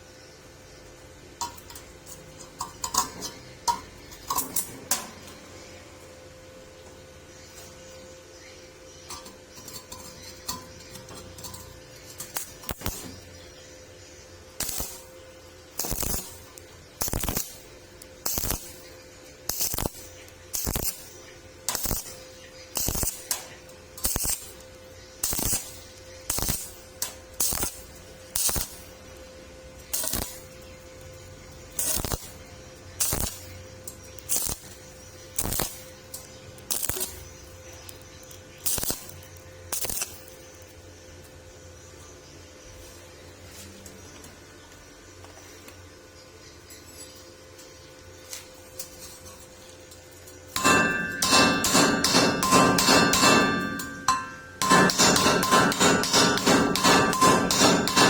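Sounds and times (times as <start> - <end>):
steady hum: 0.0 - 58.0
welding arc crackling: 9.6 - 13.7, 14.5 - 40.8, 50.5 - 58.0.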